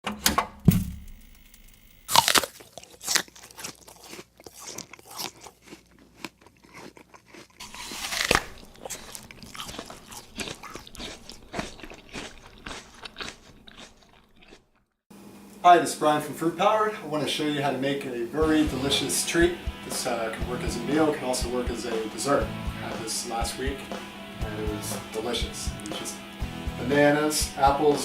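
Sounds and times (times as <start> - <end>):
crisp crunches and clicks: 1.7 - 14.8.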